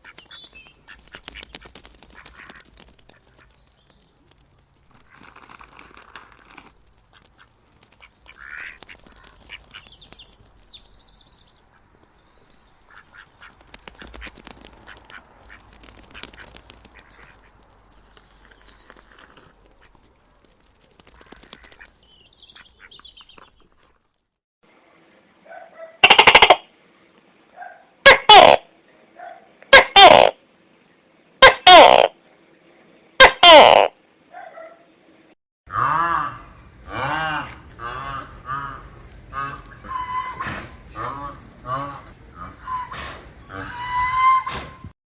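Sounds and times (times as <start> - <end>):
faint bird-like animal calls: 25.5 - 26.6
loud buzzy animal call: 26.0 - 26.6, 28.1 - 28.6, 29.7 - 30.4, 31.4 - 32.2, 33.2 - 34.0.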